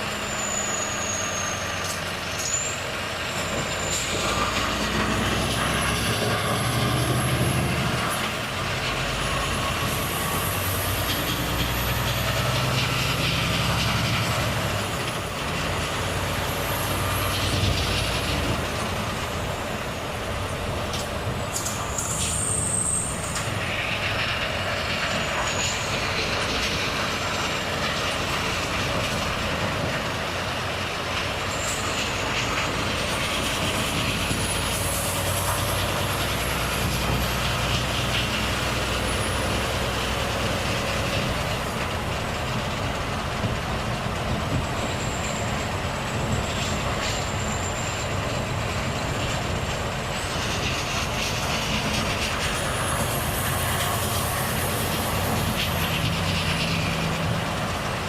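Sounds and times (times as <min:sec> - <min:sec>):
high whistling glides: 0:00.0 - 0:15.0
road noise: 0:00.0 - 0:58.0
truck diesel engine running: 0:00.0 - 0:58.0.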